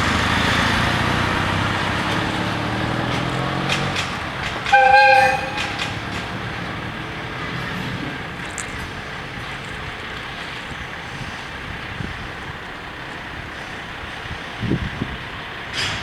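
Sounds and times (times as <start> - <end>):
vehicle engine passing: 0.0 - 11.2
road traffic noise: 0.0 - 16.0
short horn blast: 4.6 - 6.1.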